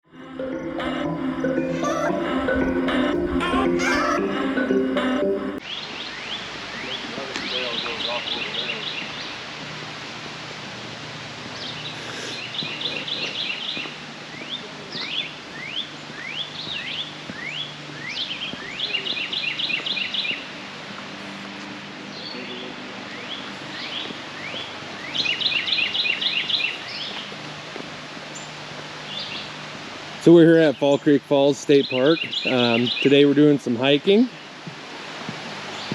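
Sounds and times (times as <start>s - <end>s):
background hiss: 4.2s - 35.9s
songbirds chirping: 5.6s - 35.9s
steady low hum: 6.4s - 30.4s.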